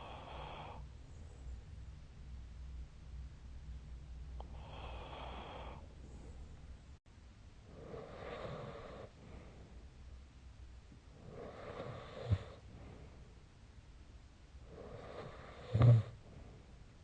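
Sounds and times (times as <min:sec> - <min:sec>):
person snoring: 0:14.7 - 0:16.2.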